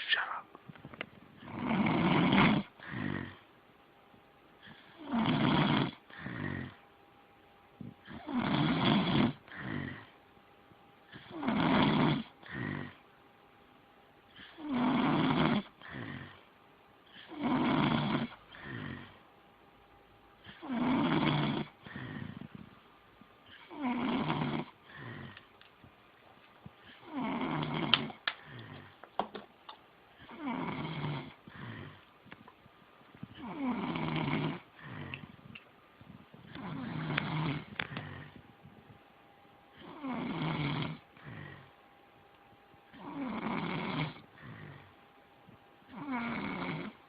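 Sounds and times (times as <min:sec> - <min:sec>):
person snoring: 0:01.4 - 0:03.4, 0:04.6 - 0:06.8, 0:08.0 - 0:10.1, 0:11.1 - 0:13.0, 0:14.4 - 0:16.5, 0:17.2 - 0:19.2, 0:20.4 - 0:22.6, 0:23.5 - 0:25.5, 0:26.9 - 0:29.0, 0:30.2 - 0:32.1, 0:33.3 - 0:35.5, 0:36.4 - 0:38.5, 0:39.8 - 0:41.7, 0:42.9 - 0:45.0, 0:45.9 - 0:47.0.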